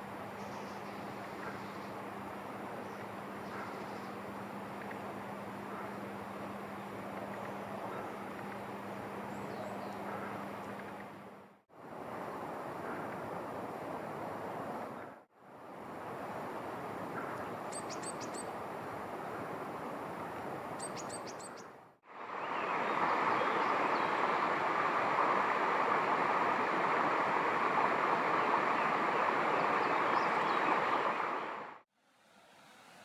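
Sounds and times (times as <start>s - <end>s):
outdoor background noise: 0.0s - 33.0s
songbird calling: 0.4s - 2.0s, 2.8s - 4.2s, 6.7s - 10.5s, 17.2s - 18.6s, 20.8s - 21.8s, 29.6s - 31.5s.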